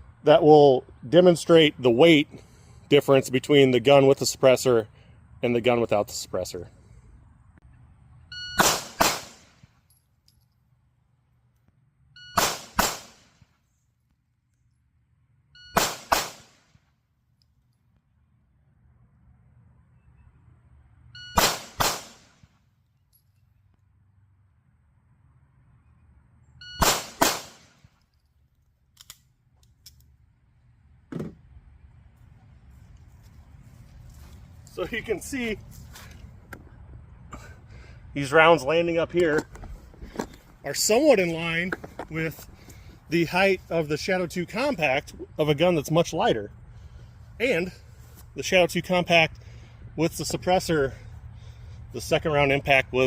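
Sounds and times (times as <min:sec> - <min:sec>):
shot timer beeps: 0:08.3 - 0:08.6, 0:21.1 - 0:21.4, 0:26.6 - 0:26.9
pistol shots: 0:08.6 - 0:09.6, 0:12.4 - 0:13.4, 0:15.8 - 0:16.6, 0:21.4 - 0:22.4, 0:26.8 - 0:27.8
shot timer beep: 0:26.6 - 0:26.9.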